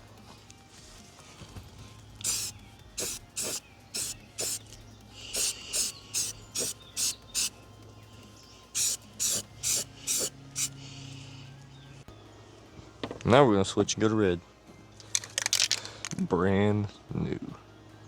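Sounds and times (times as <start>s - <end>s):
spray can hissing: 2.2s - 7.6s, 8.7s - 10.8s.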